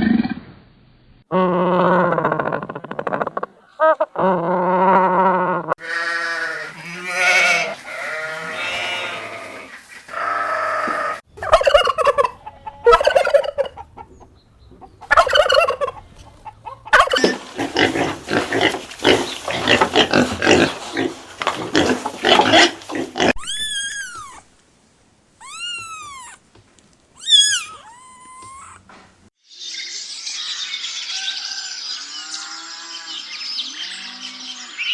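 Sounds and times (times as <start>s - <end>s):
farm animals calling: 5.8s - 24.4s.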